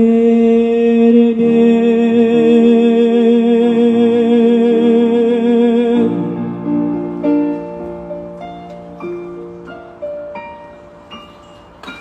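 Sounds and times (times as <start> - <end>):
person singing long note with vibrato: 0.0 - 6.9
keyboard chords: 4.8 - 12.0.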